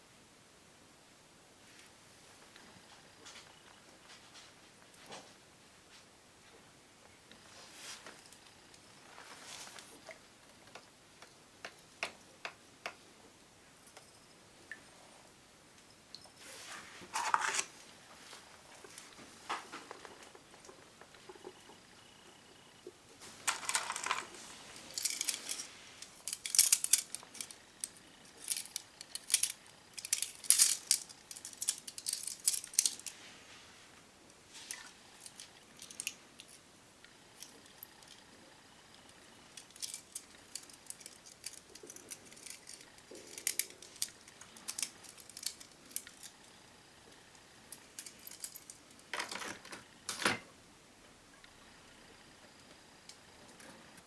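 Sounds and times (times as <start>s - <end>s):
small metal parts clicking: 23.4s - 33.2s, 34.7s - 36.6s, 39.5s - 46.4s, 47.7s - 50.2s.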